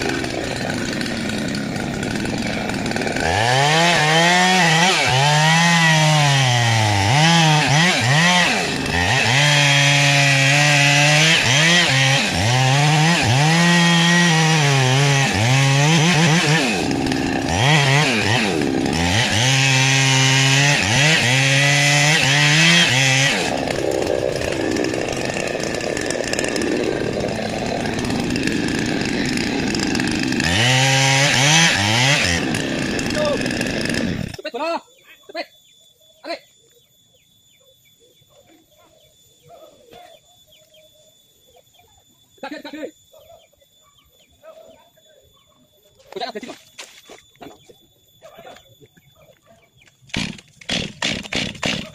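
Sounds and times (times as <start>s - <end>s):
chainsaw cutting wood: 0.0s - 34.4s, 49.9s - 51.9s.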